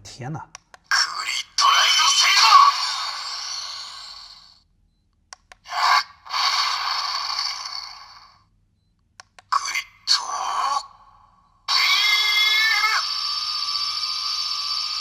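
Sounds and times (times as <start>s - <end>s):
hissing electronic sound effects: 11.7s - 15.0s.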